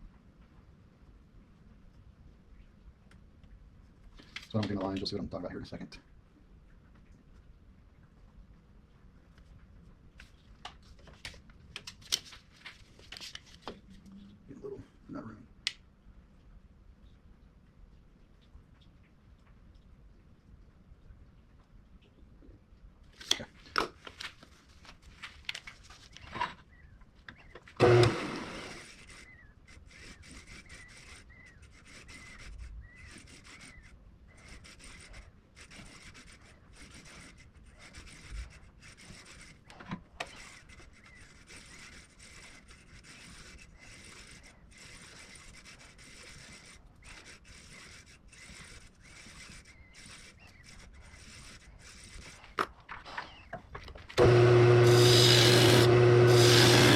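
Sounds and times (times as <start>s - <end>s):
faint steady scraping: 23.4s - 56.9s
lathe tool cutting wood: 27.8s - 29.3s, 54.2s - 56.9s.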